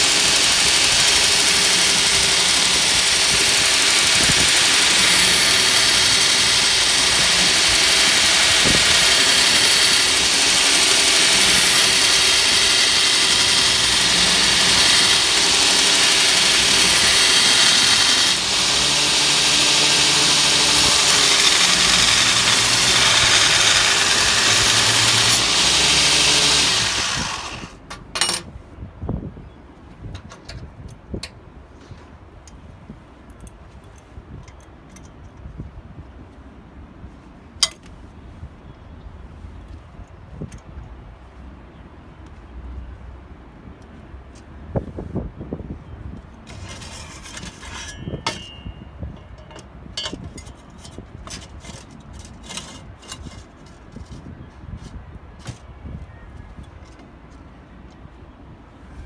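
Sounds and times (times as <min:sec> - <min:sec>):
belt grinder whining: 0:00.0 - 0:27.8, 0:46.5 - 0:48.6.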